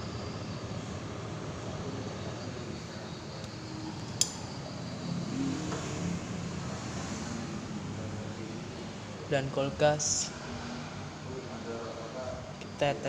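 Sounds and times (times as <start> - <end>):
refrigerator fan whirring: 0.0 - 6.8
sharp click: 3.4 - 4.6.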